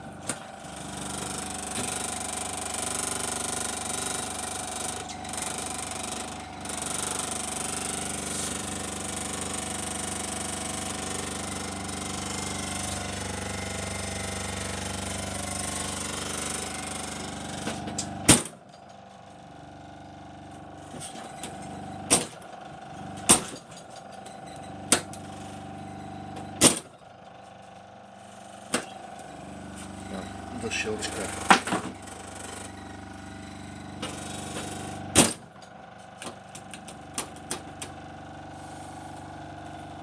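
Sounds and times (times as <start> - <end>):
refrigerator compressor humming: 0.0 - 40.0.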